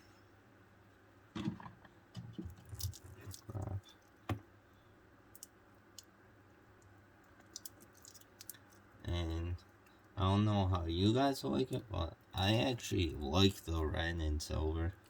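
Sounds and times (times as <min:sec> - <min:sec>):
small clicks of watch parts: 0:05.3 - 0:06.1.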